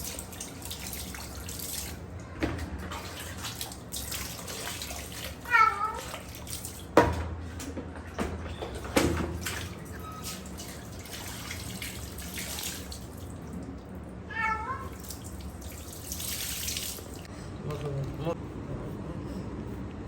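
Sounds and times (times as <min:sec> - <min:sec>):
bath water: 0:00.0 - 0:18.4
cat meowing: 0:05.4 - 0:06.2, 0:14.3 - 0:15.2.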